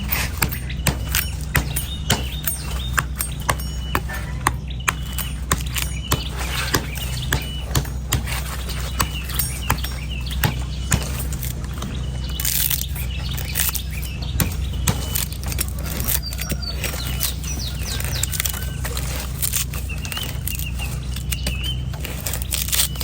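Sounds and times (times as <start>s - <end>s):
knife chopping coconut: 0.0s - 11.7s, 12.4s - 23.0s
birds chirping: 0.0s - 23.0s.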